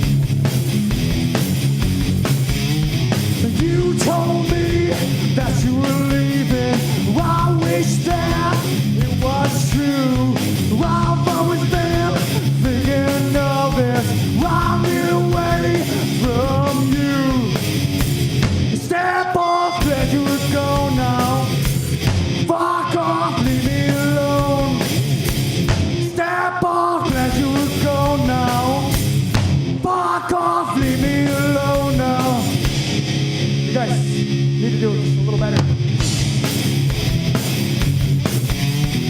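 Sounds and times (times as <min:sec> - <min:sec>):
rock band playing live: 0:00.0 - 0:39.0
person singing: 0:03.4 - 0:17.7, 0:18.8 - 0:21.6, 0:22.5 - 0:25.0, 0:26.1 - 0:29.0, 0:29.8 - 0:32.7.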